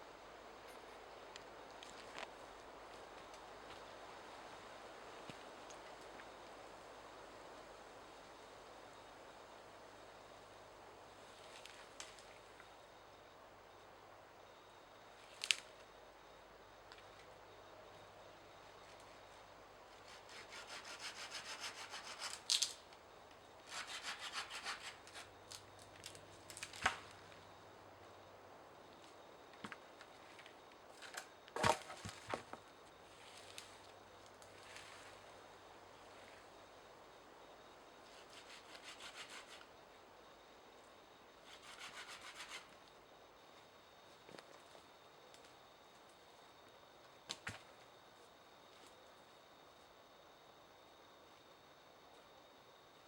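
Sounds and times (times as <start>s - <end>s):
hand saw cutting wood: 20.1s - 22.4s, 23.7s - 25.0s
sharp crack of wood: 31.1s - 32.4s.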